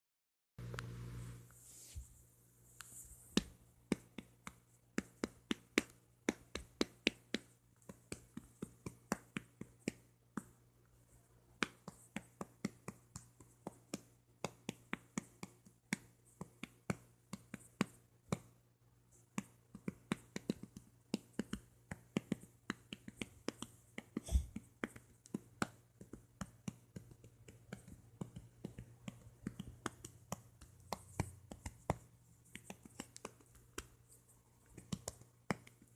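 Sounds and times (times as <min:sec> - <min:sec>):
faint low hum: 0:00.6 - 0:05.2.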